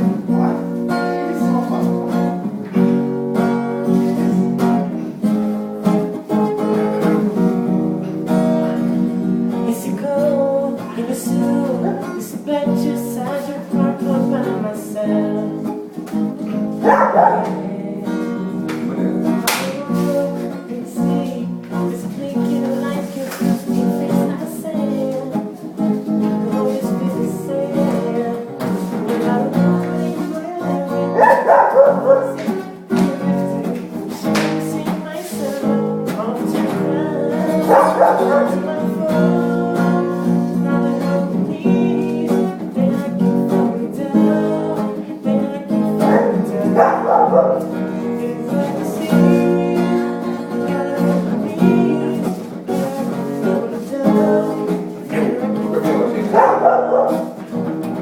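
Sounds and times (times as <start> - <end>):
acoustic guitar playing: 0.0 - 58.0
dog barking: 0.3 - 0.7, 11.7 - 12.2, 16.5 - 17.7, 31.0 - 32.6, 37.5 - 38.7, 46.0 - 47.8, 56.1 - 57.4.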